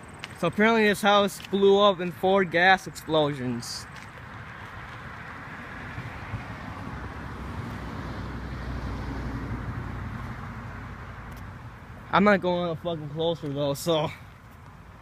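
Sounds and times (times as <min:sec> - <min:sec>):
passing vehicle rumble: 0:03.7 - 0:15.0.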